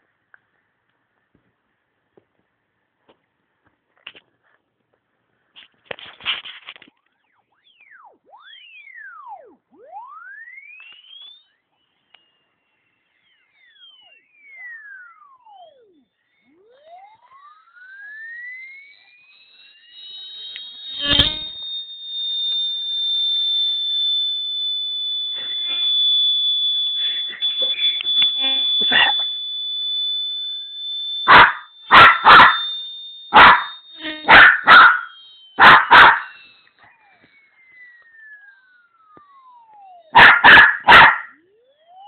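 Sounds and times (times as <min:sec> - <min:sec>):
high-pitched electronic tone: 0:07.1 - 0:42.0
dog barking loudly: 0:31.3 - 0:32.6, 0:33.4 - 0:33.7, 0:34.3 - 0:36.2, 0:40.2 - 0:41.3.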